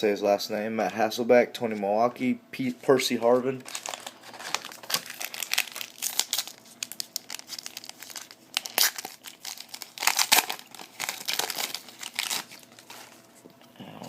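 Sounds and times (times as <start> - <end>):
card pack wrapper crinkling: 3.1 - 13.3.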